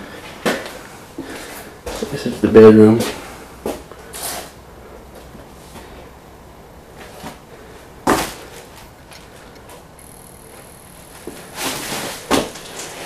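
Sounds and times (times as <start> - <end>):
faint high-pitched tone: 10.0 - 12.2.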